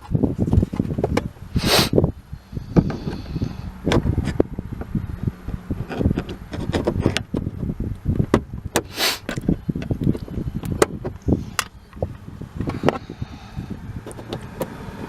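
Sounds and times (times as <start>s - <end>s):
tool scraping plastic: 5.8s - 7.6s.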